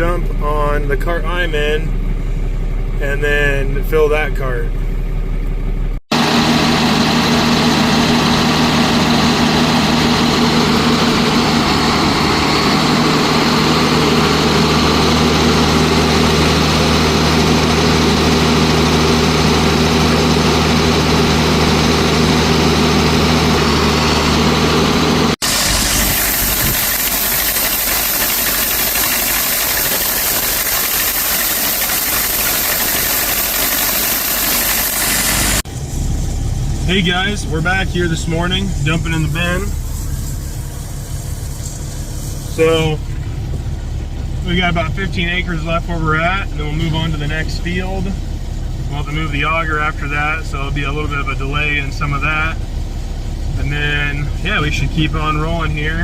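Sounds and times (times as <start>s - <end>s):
tractor engine running: 0.0s - 56.0s
hissy machine noise: 6.1s - 35.8s.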